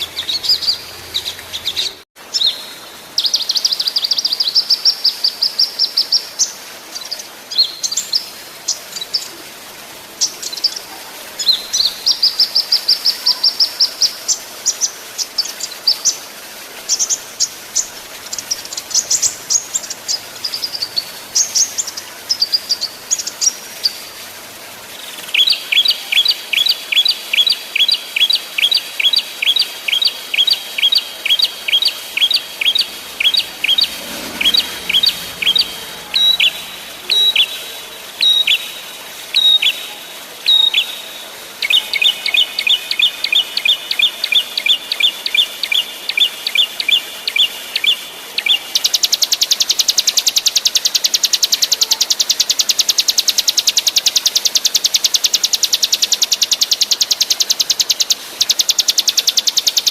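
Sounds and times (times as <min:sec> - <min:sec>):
songbirds chirping: 0:00.0 - 0:59.9.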